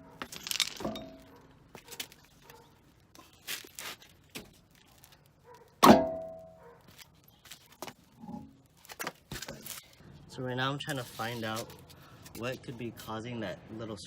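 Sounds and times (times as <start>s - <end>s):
loud ringing metal clang: 5.8s - 6.5s.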